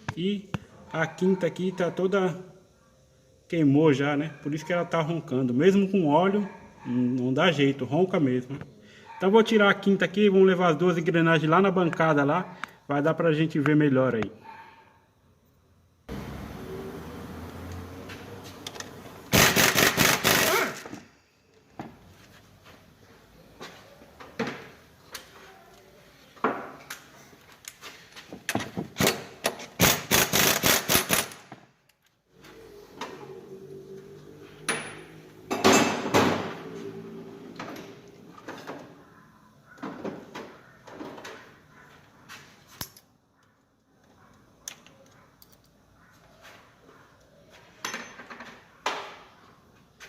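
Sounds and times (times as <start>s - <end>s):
metal tool knocks and clanks: 34.7s - 36.2s.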